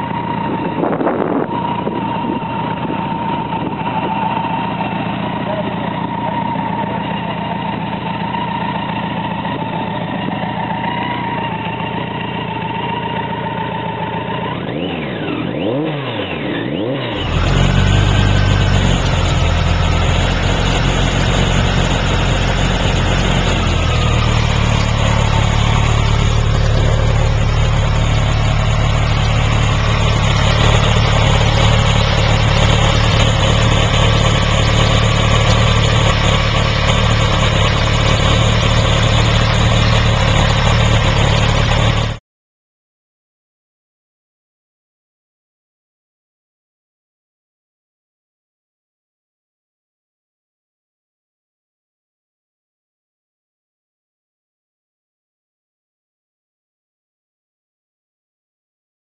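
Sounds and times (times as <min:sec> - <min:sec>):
motorcycle engine revving and idling: 0:00.0 - 0:42.2.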